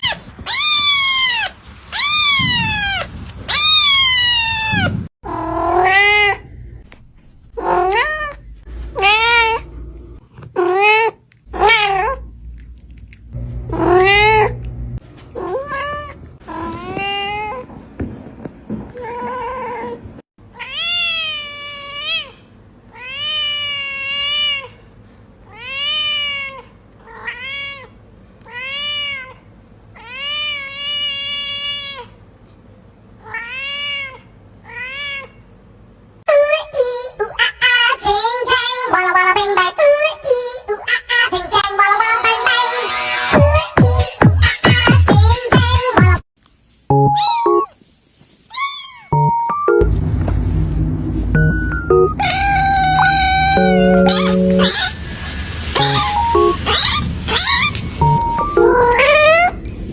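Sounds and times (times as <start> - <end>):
cat meowing: 0.0 - 6.5, 9.0 - 9.7, 10.6 - 12.2, 13.7 - 14.6, 52.2 - 55.0, 58.6 - 59.6.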